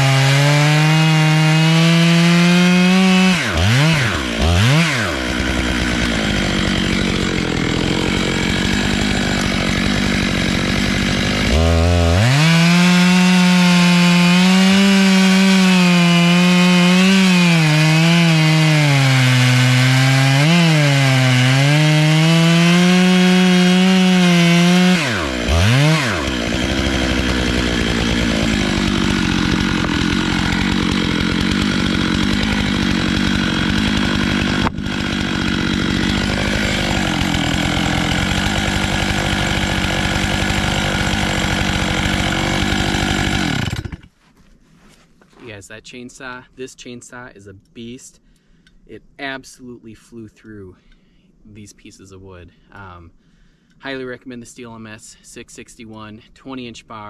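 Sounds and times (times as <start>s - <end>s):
chainsaw idling: 0.0s - 44.1s
chainsaw cutting log: 0.0s - 44.2s.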